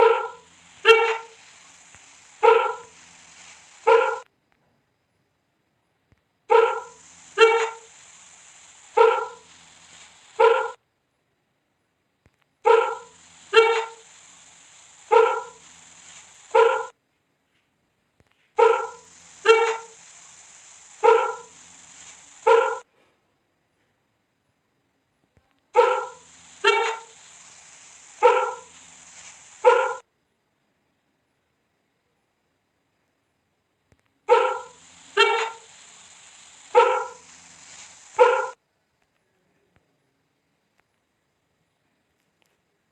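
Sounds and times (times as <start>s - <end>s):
animal bark-like calls: 0.0s - 4.3s, 6.5s - 10.8s, 12.6s - 17.0s, 18.6s - 22.9s, 25.7s - 30.1s, 34.2s - 38.6s
steady hiss: 0.0s - 42.9s.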